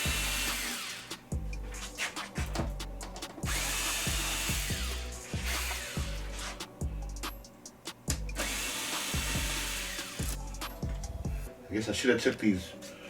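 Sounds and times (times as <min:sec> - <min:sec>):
power drill whirring: 0:00.0 - 0:01.1, 0:03.4 - 0:06.6, 0:08.4 - 0:10.4
background music with steady beat: 0:00.0 - 0:13.0.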